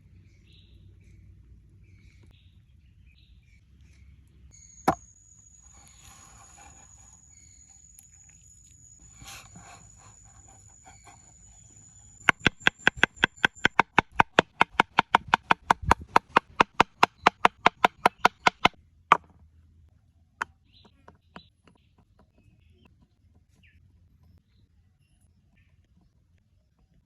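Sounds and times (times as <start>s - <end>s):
fast sharp knocks: 12.2s - 19.2s.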